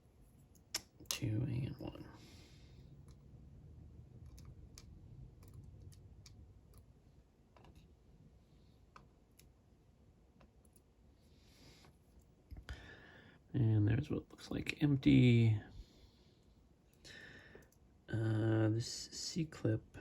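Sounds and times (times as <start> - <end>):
low background hum: 0.0 - 20.0.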